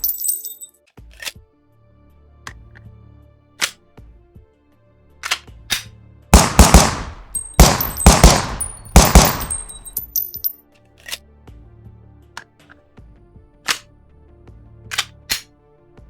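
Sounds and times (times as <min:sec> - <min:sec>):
pistol mechanical clicks: 0:05.2 - 0:10.5, 0:14.9 - 0:15.5
pistol shots echoing: 0:06.4 - 0:10.2
high metallic ringing: 0:07.1 - 0:10.5.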